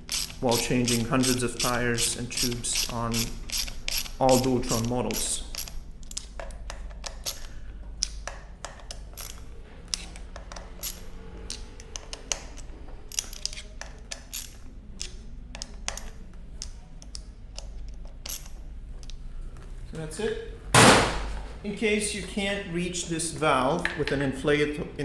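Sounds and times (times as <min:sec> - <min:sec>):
small metal tools clicking: 0:00.0 - 0:19.2.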